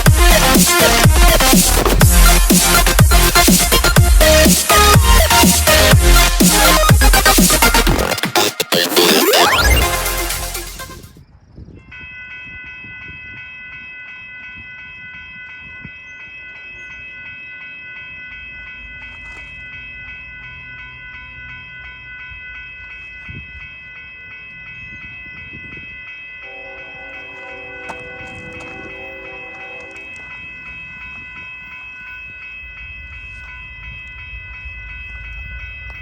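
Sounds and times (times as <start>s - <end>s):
train low rumble: 0.0s - 7.9s, 10.9s - 36.0s
high-pitched ringing tone: 10.8s - 36.0s
locomotive horn: 26.4s - 30.3s.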